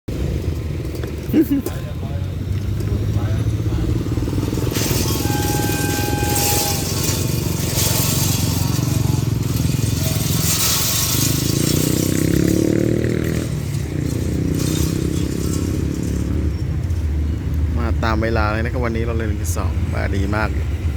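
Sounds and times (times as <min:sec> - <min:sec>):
diesel locomotive engine: 0:00.1 - 0:20.9
hissing rattle: 0:02.7 - 0:17.2.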